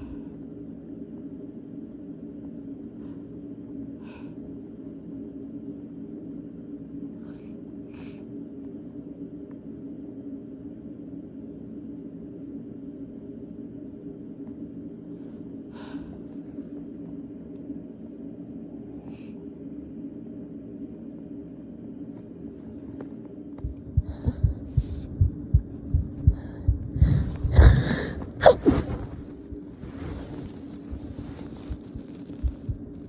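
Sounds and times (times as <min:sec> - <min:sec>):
steady low hum: 0:00.0 - 0:33.0
heartbeat thumps: 0:23.6 - 0:33.0
stifled sneeze: 0:28.4 - 0:29.1.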